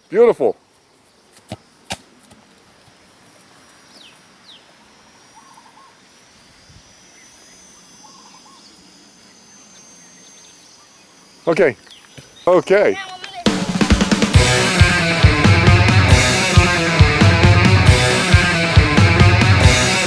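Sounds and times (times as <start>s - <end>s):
faint outdoor ambience: 0.0s - 20.0s
soft bird calls: 3.6s - 6.1s, 7.1s - 13.4s.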